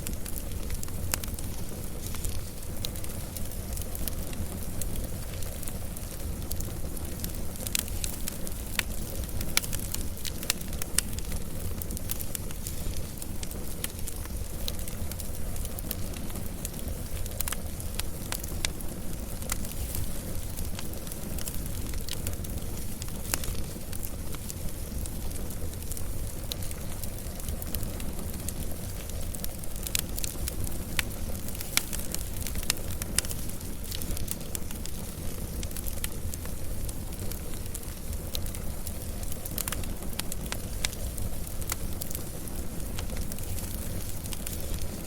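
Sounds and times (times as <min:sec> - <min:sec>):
wood fire crackling: 0:00.0 - 0:45.0.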